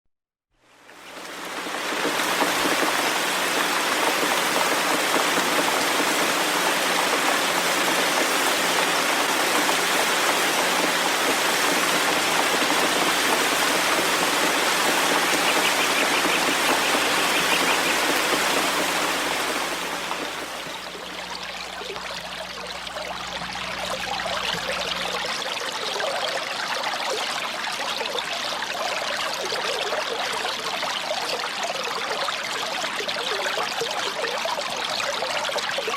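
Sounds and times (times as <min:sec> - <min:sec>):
water trickling and splashing: 0:00.6 - 0:35.9
fountain spray hissing: 0:00.9 - 0:25.6.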